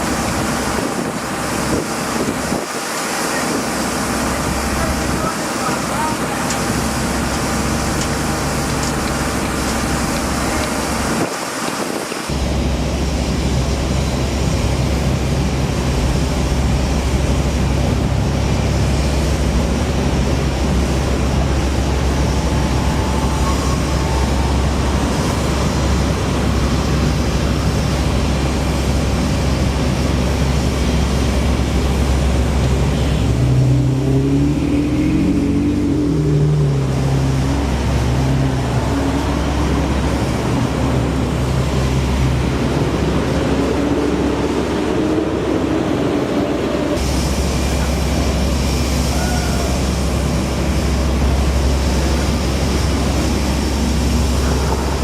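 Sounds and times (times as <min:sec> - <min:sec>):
traffic rumble: 0:00.0 - 0:55.0
pitched engine tone: 0:21.0 - 0:28.7, 0:32.2 - 0:55.0.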